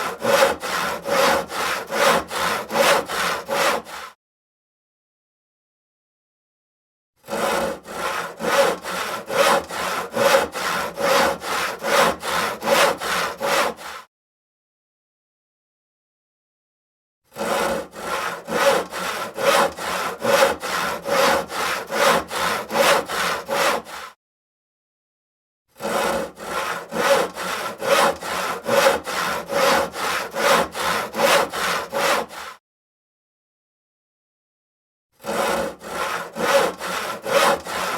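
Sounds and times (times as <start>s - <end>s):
hand saw cutting wood: 0.0s - 4.2s, 7.2s - 14.1s, 17.3s - 24.2s, 25.7s - 32.6s, 35.2s - 37.9s.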